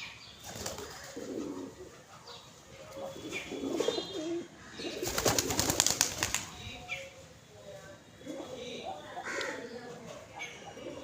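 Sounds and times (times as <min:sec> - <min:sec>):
doves cooing: 0:00.5 - 0:02.1, 0:02.9 - 0:07.0, 0:08.2 - 0:11.0.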